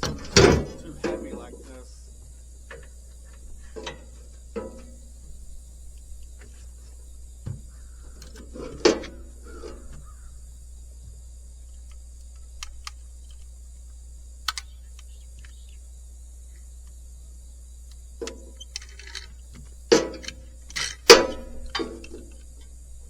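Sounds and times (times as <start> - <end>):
metallic clicks and knocks: 14.5 - 15.6, 18.2 - 22.8.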